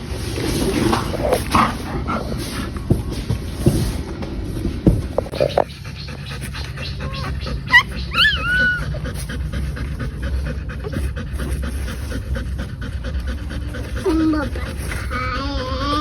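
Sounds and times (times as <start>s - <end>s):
dog panting rapidly: 4.7s - 16.0s
dog whining: 5.3s - 16.0s.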